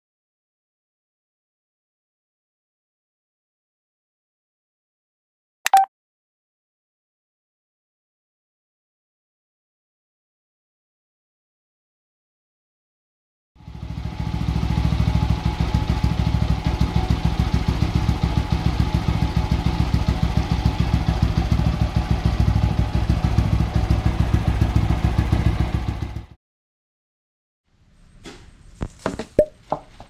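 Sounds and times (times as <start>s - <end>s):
motorcycle engine idling: 13.6s - 26.4s.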